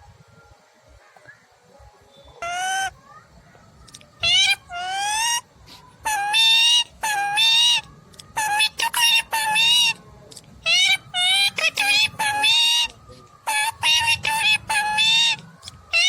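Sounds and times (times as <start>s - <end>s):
parrot shrill calls: 2.4s - 3.0s, 4.2s - 10.0s, 10.6s - 16.0s.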